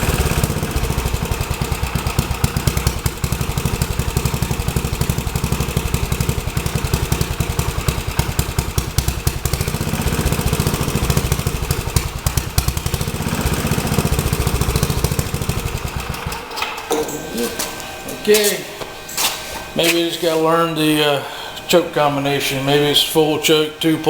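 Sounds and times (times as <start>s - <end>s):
tiller engine running: 0.0s - 24.0s.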